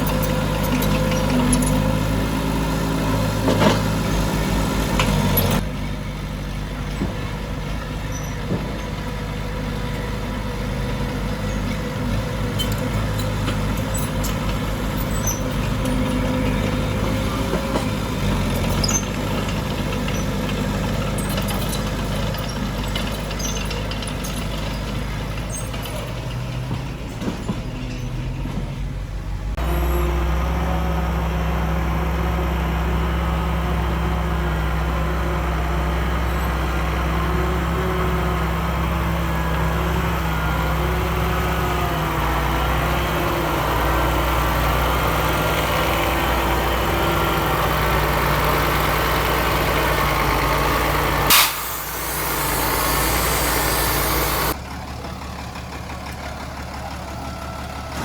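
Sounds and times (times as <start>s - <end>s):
heavy diesel engine running: 0.0s - 58.0s
short sharp hiss: 51.3s - 54.5s.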